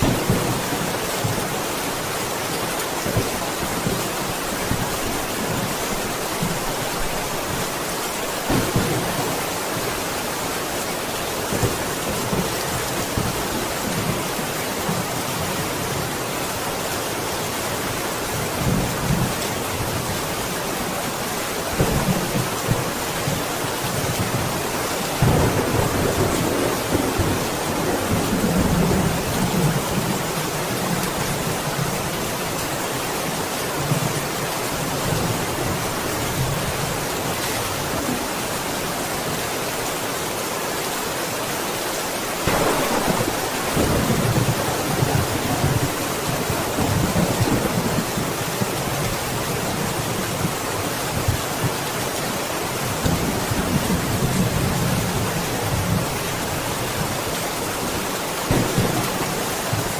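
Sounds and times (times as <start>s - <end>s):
thunder rumbling: 0.0s - 1.8s, 8.2s - 16.0s, 21.7s - 31.1s, 42.4s - 49.0s, 58.5s - 59.9s
heavy rain falling: 0.0s - 59.9s.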